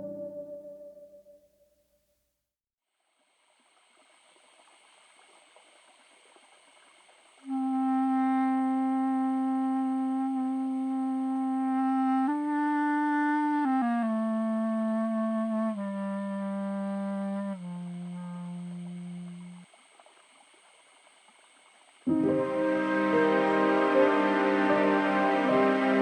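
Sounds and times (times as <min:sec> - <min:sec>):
woodwind playing long notes: 0:00.0 - 0:01.4, 0:07.5 - 0:19.6, 0:22.1 - 0:26.0.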